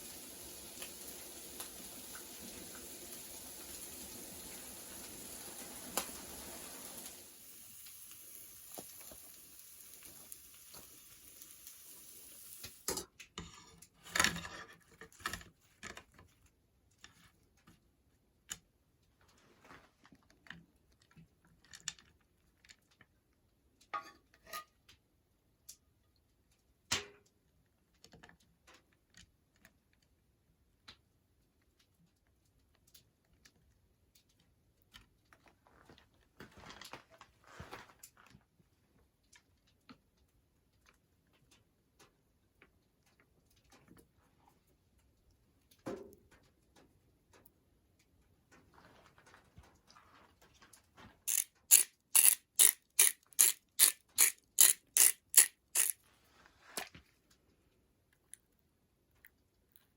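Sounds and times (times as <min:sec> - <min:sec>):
steady hiss: 0:00.0 - 0:12.9.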